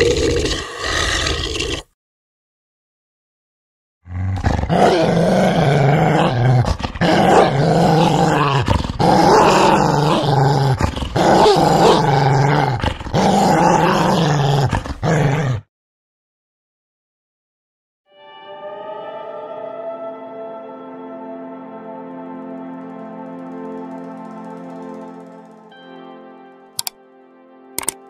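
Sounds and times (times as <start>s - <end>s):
dog growling: 0.0s - 1.9s, 4.1s - 15.7s.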